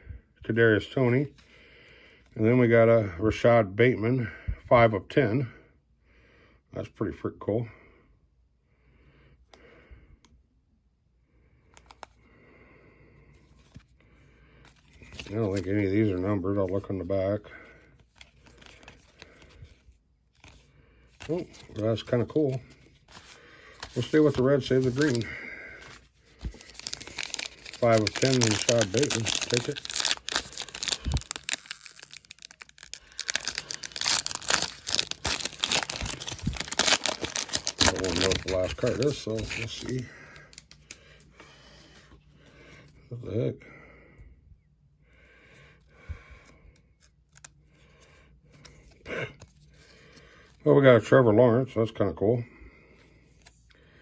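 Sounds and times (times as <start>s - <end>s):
foil wrapper crinkling: 18.1s - 19.7s, 21.2s - 41.0s.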